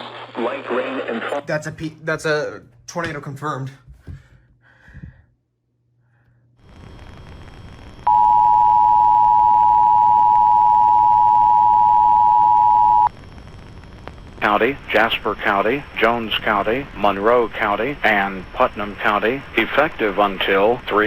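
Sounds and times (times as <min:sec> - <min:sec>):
radio static hiss: 0:00.0 - 0:01.5, 0:06.7 - 0:21.0
two-tone alert alarm: 0:08.1 - 0:13.1.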